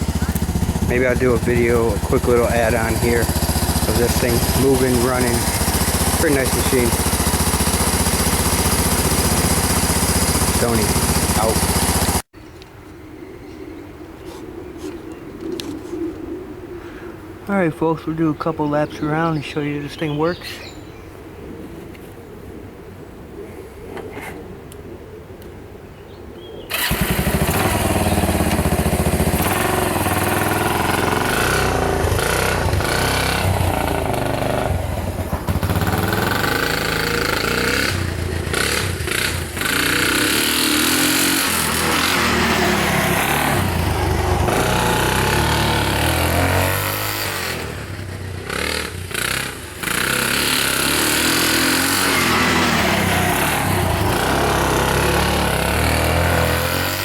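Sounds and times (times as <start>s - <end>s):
engine revving: 0.0s - 12.3s, 26.7s - 57.0s.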